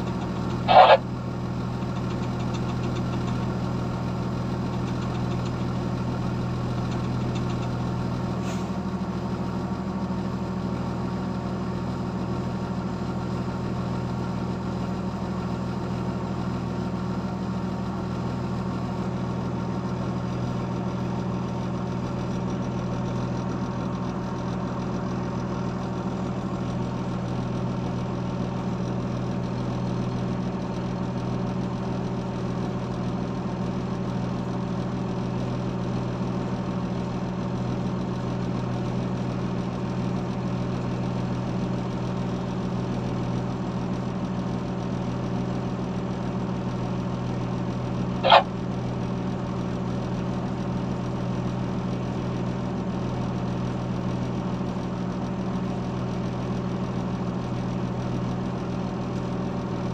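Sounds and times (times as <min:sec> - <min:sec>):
diesel engine idling: 0:00.0 - 0:36.5, 0:43.0 - 0:59.9.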